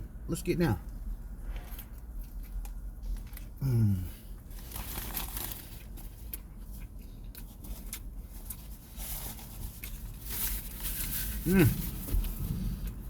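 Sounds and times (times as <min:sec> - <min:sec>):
person humming mm: 0:03.6 - 0:04.1, 0:11.4 - 0:11.8
wrapper paper crinkling and tearing: 0:04.6 - 0:06.1.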